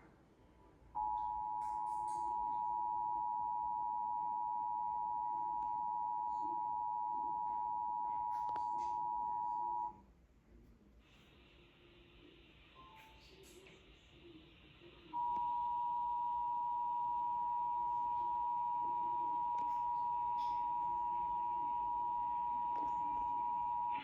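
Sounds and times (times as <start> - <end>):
steady two-tone alarm: 1.0 - 9.9, 15.1 - 24.0.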